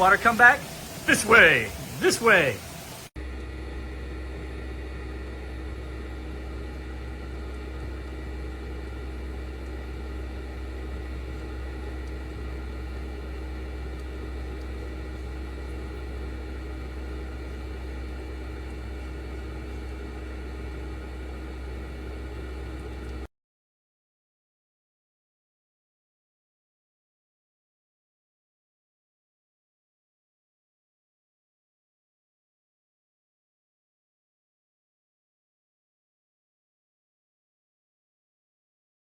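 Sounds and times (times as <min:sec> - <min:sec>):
sump pump humming: 0:00.0 - 0:23.3.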